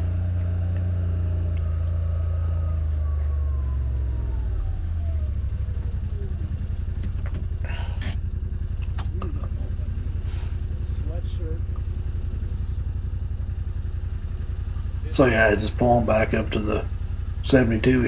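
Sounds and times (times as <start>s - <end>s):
faint whine falling in pitch: 0.0s - 7.4s
pickup truck engine running: 0.0s - 18.0s.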